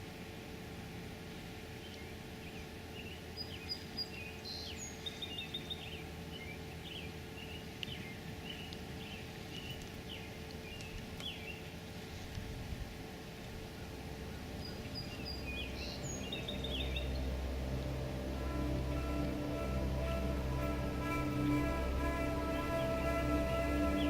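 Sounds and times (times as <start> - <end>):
low outdoor background noise: 0.0 - 24.0
birds chirping and trilling: 13.8 - 24.0.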